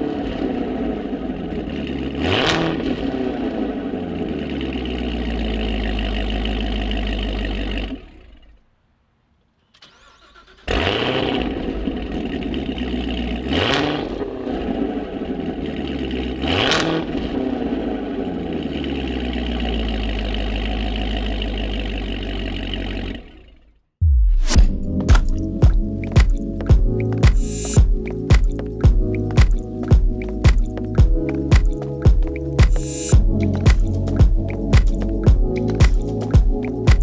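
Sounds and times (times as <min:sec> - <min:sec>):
engine revving: 0:00.0 - 0:08.4, 0:09.8 - 0:29.4
car engine idling: 0:03.4 - 0:08.0, 0:11.4 - 0:16.5, 0:17.2 - 0:23.6.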